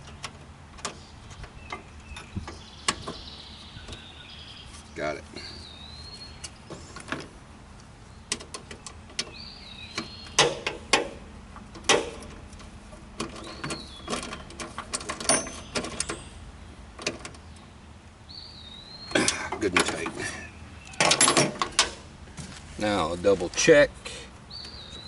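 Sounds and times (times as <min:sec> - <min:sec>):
bird chirping: 0:00.0 - 0:07.0, 0:08.0 - 0:10.9, 0:13.3 - 0:21.2, 0:24.5 - 0:25.0.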